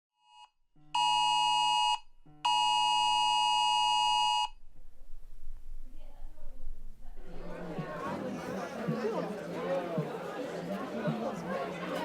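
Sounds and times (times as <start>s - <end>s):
faint phone beep: 1.0s - 4.6s
loud electronic alarm tones: 1.0s - 4.6s.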